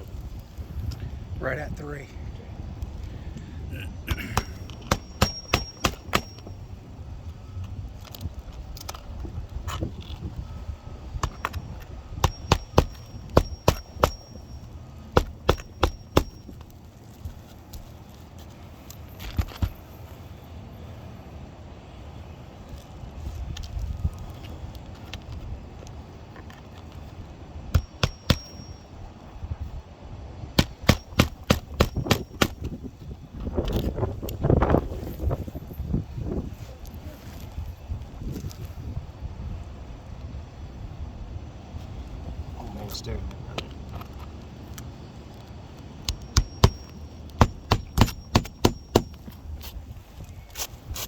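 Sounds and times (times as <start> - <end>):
sharp knocks: 4.1 - 6.6, 12.2 - 14.4, 15.2 - 16.5, 27.7 - 28.8, 30.6 - 32.7, 46.1 - 49.2
hammer blows on metal: 4.1 - 6.7, 11.2 - 16.7, 27.7 - 29.0, 30.6 - 32.8, 46.1 - 49.4
faint metallic ring: 4.1 - 7.7, 10.4 - 17.6, 27.8 - 29.4, 46.1 - 49.7.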